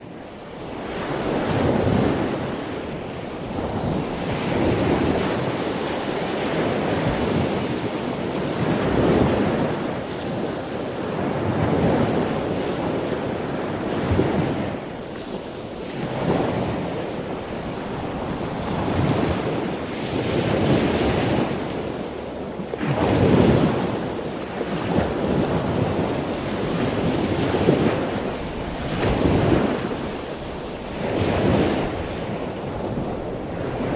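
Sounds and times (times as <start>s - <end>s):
ocean waves breaking on shore: 0.0s - 33.9s.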